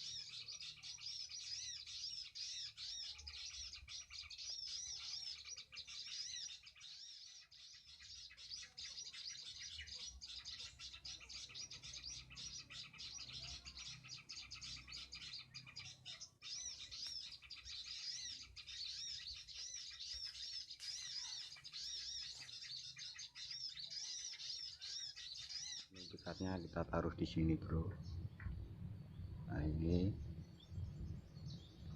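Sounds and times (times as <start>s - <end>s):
small birds chirping: 0.0s - 31.9s
faint low rumble: 26.6s - 31.9s.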